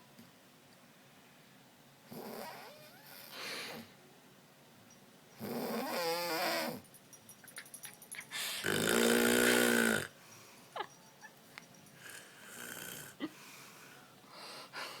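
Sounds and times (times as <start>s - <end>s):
quiet breaths: 2.6s - 4.0s, 8.1s - 10.8s, 11.6s - 15.0s
woman snoring: 5.4s - 6.8s, 8.5s - 10.2s, 12.0s - 13.4s.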